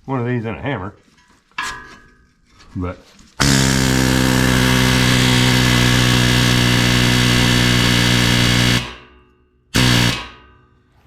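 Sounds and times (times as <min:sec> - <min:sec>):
power impact wrench running: 0:03.4 - 0:10.6.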